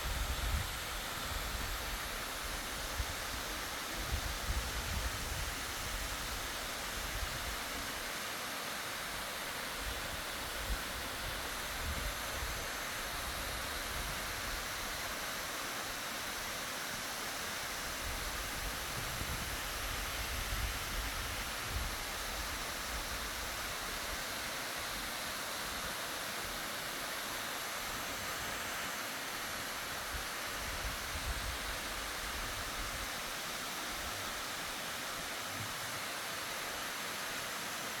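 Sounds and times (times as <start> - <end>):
waterfall roaring: 0.0 - 38.0.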